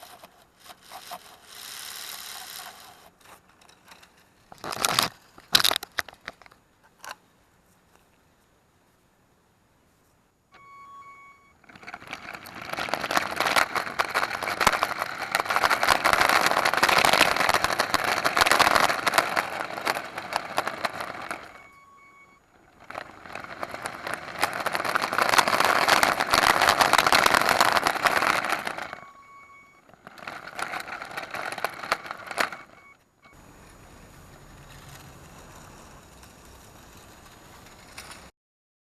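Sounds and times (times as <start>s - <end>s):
toy car motor rattling whir: 0.0s - 6.2s, 10.6s - 38.3s
short beep: 10.5s - 11.6s, 21.3s - 22.4s, 28.7s - 29.8s, 32.5s - 33.4s.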